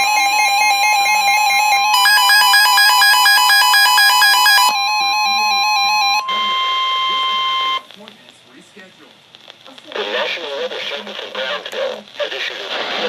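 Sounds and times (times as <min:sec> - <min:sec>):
steady high tone: 0:01.2 - 0:07.8.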